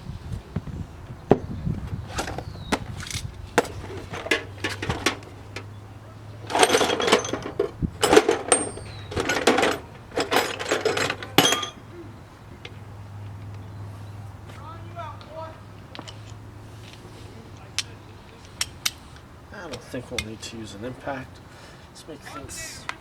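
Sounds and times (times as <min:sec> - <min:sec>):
hand tools clicking on metal: 0:02.1 - 0:05.8, 0:06.4 - 0:11.8, 0:17.6 - 0:20.4.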